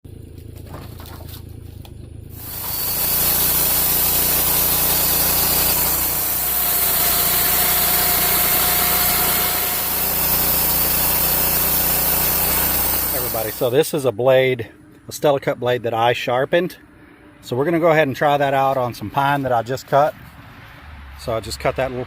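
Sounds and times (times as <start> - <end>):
band sawmill cutting log: 2.3 - 13.9.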